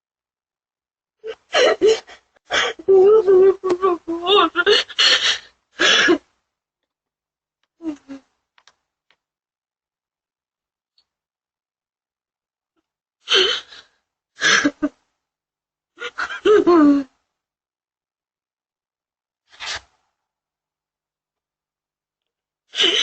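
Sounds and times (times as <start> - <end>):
person gasping and crying out: 1.2 - 6.2.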